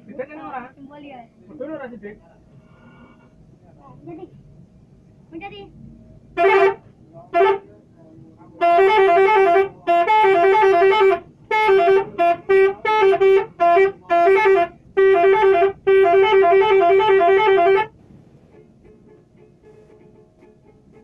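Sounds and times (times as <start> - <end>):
musical air horn blasts: 6.4 - 7.7, 8.6 - 21.0.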